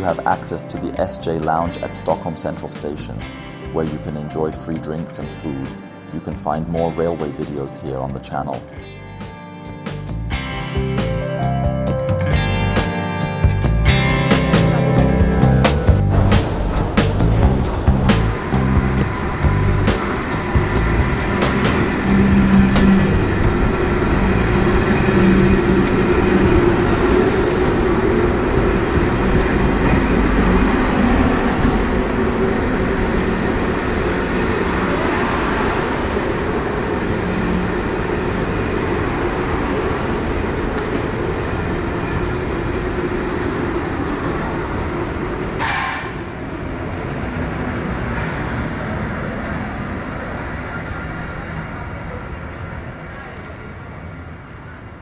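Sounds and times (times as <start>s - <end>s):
train rumbling on rails: 12.4s - 55.0s.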